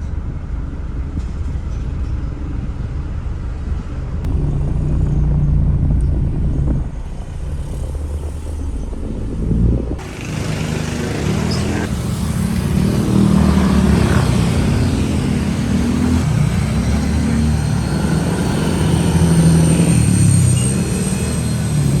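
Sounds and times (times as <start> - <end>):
vehicle engine running: 0.0 - 22.0.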